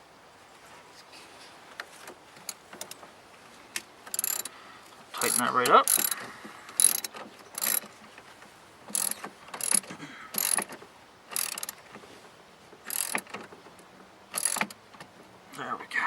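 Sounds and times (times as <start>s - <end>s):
socket ratchet clicking: 4.1s - 4.5s, 5.2s - 6.2s, 6.8s - 7.9s, 8.9s - 11.8s, 12.9s - 13.4s, 14.3s - 14.8s.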